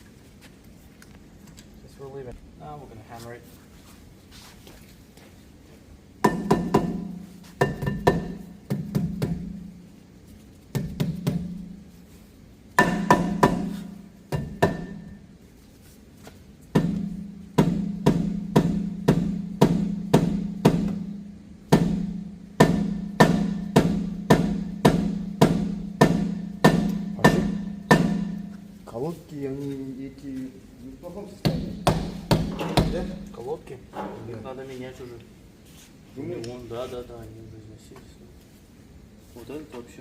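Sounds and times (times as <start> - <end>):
rotor ringing hum: 6.0 - 16.0, 16.6 - 34.9
hammer striking metal rotor: 6.2 - 9.5, 12.8 - 15.2, 21.7 - 28.5.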